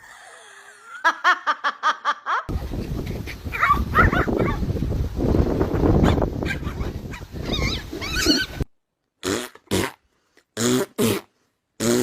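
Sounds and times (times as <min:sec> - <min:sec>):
dog whining: 0:06.5 - 0:08.6.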